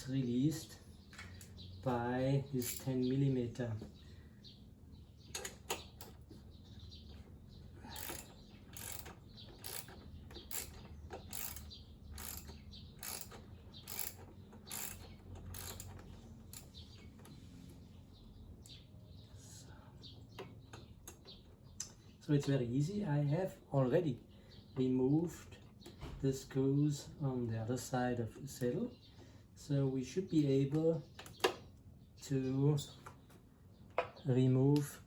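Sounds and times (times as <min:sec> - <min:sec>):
ratchet wrench clicking: 0:02.6 - 0:03.0, 0:07.9 - 0:16.8.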